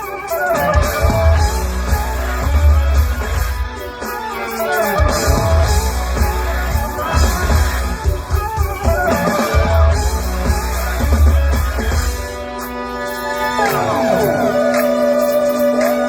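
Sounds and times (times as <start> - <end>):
live rock band playing: 0.0 - 16.0
heavy pulsing bass: 1.0 - 3.6, 5.2 - 12.1.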